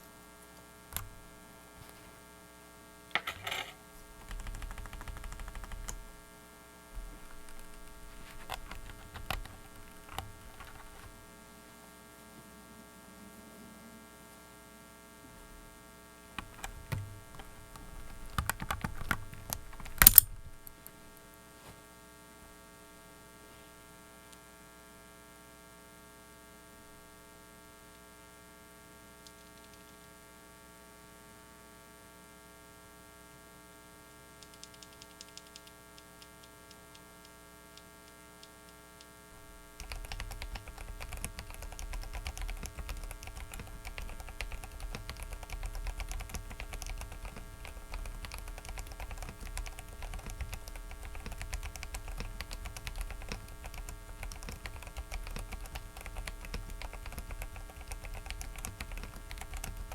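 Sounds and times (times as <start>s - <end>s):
electrical hum: 0.0s - 25.4s, 31.2s - 59.9s
mechanical keyboard key clicks: 18.2s - 20.4s.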